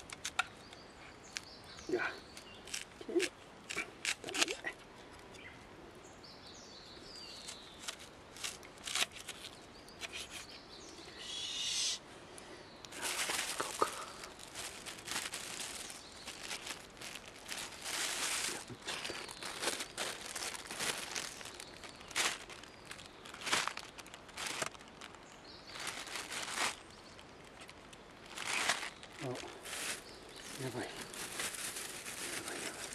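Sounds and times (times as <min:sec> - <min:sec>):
packaging rustling: 0:07.4 - 0:10.5, 0:12.9 - 0:32.9.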